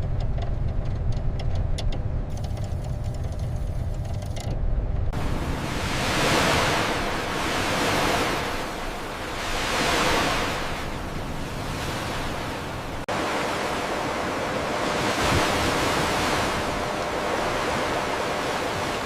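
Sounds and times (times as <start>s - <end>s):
sea waves washing: 5.1s - 19.0s.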